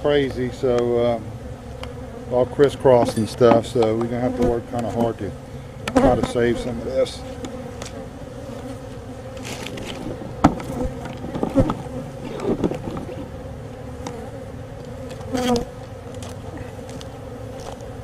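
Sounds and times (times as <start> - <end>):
bees buzzing: 0.0 - 18.0.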